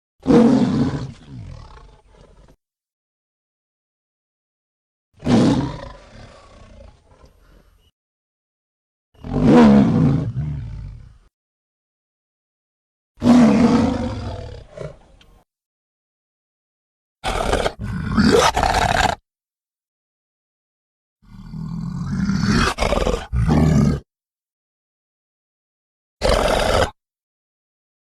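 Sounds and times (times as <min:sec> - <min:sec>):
dinosaur roar: 0:00.2 - 0:02.6, 0:05.2 - 0:07.6, 0:09.2 - 0:11.2, 0:13.2 - 0:15.2, 0:17.2 - 0:19.2, 0:21.2 - 0:24.1, 0:26.2 - 0:27.0.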